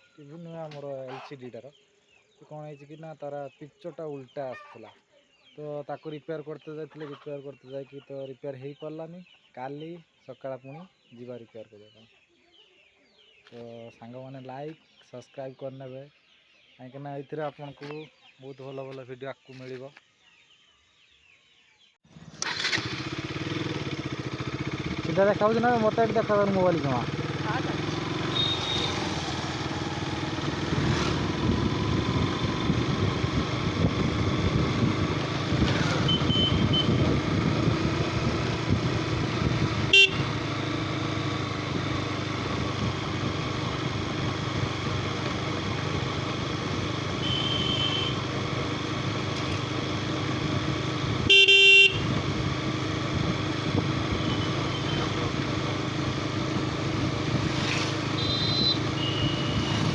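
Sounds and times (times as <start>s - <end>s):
motorcycle engine and road noise: 22.0s - 59.9s
faint short horn toots: 28.2s - 29.0s, 47.2s - 48.2s, 58.1s - 59.9s
loud vehicle horn blast: 28.2s - 29.0s, 35.9s - 37.2s, 39.8s - 40.5s, 47.1s - 48.3s, 51.2s - 52.2s, 54.2s - 55.2s, 58.0s - 59.9s.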